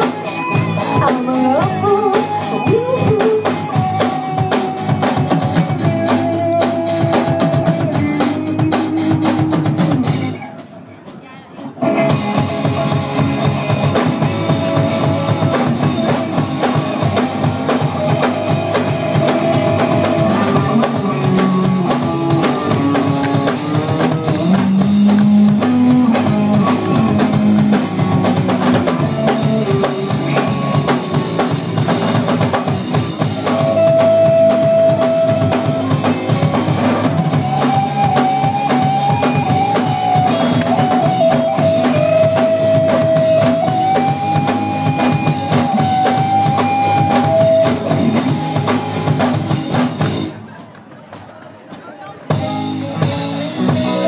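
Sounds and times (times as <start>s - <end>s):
live rock band: 0.0s - 54.0s.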